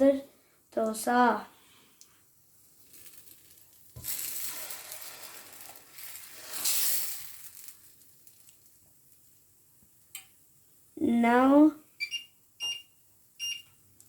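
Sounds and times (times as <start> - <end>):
batter sizzling on hot griddle: 2.6 - 8.9.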